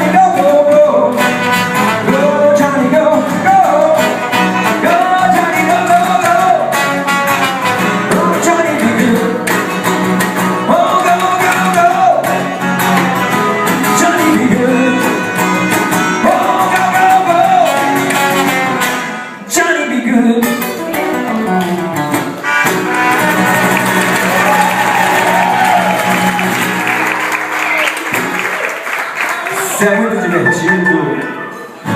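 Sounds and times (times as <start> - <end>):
person singing: 0.0 - 9.6, 10.6 - 18.8
guitar accompaniment: 0.0 - 31.9.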